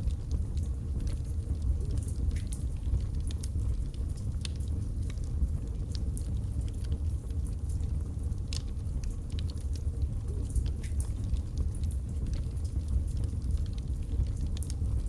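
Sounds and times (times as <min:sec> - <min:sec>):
logs crackling and popping: 0:00.0 - 0:15.0
wood fire burning: 0:00.0 - 0:15.0.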